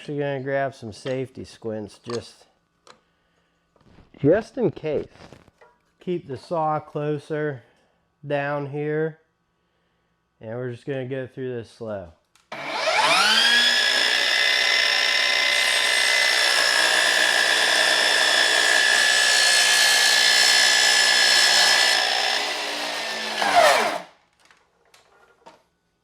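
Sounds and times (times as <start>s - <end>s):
miter saw motor whining: 12.5s - 24.1s
saw blade cutting wood: 12.5s - 24.2s.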